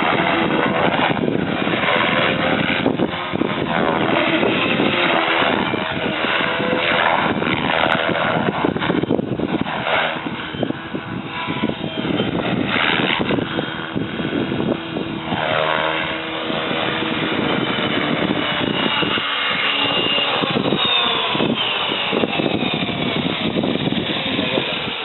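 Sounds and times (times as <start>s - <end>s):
rc helicopter motor whine: 0.0s - 25.0s
rotor blade noise: 0.0s - 25.0s.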